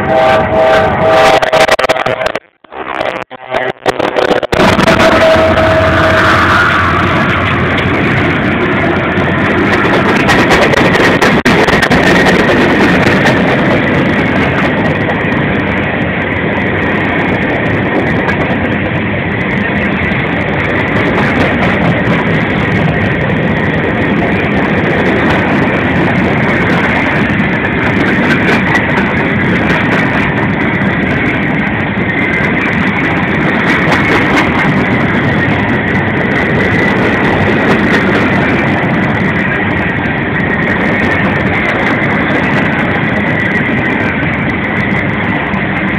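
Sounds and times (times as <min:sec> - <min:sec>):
high-pitched squeal: 0:00.0 - 0:21.6
train wheels rumbling on rail: 0:00.0 - 0:45.9.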